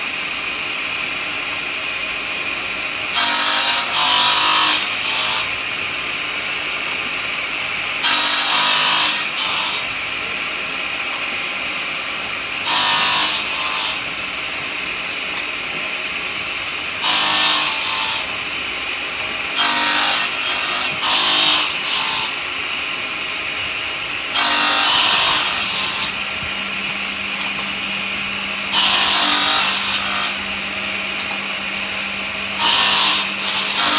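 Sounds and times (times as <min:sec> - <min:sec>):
stone-cutting saw whining: 0:00.2 - 0:33.9
blade grinding into stone: 0:24.3 - 0:26.3, 0:28.7 - 0:30.5, 0:32.6 - 0:33.9.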